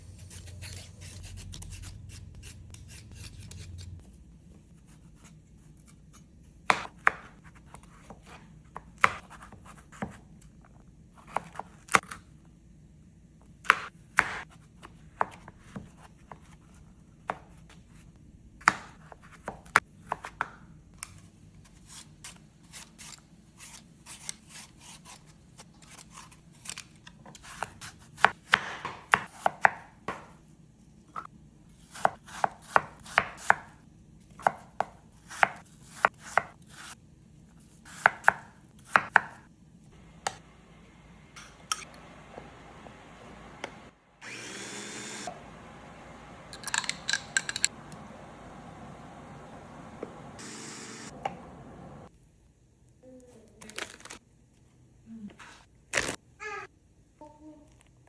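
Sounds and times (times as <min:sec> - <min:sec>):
knife chopping on cutting board: 0:05.0 - 0:10.3, 0:11.2 - 0:12.1, 0:13.6 - 0:14.5, 0:26.1 - 0:30.4, 0:31.9 - 0:33.8, 0:34.4 - 0:37.0, 0:37.9 - 0:39.5.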